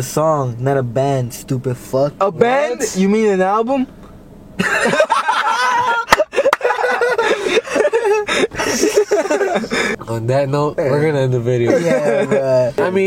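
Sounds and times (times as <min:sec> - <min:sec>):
young men laughing: 0:04.6 - 0:10.0, 0:11.5 - 0:13.0.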